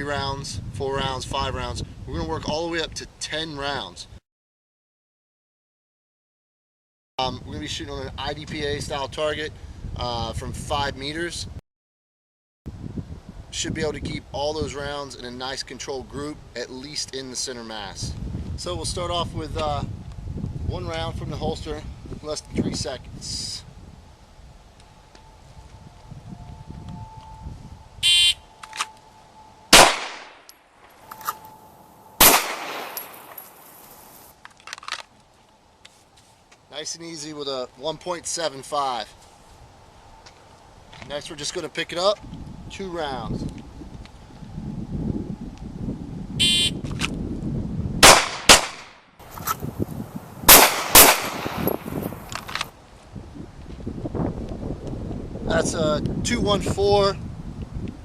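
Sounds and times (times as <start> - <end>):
shot timer beep: 28.0 - 28.5, 46.4 - 46.8
pistol gunshots: 29.7 - 30.4, 32.2 - 33.6, 48.0 - 49.0, 50.5 - 52.0.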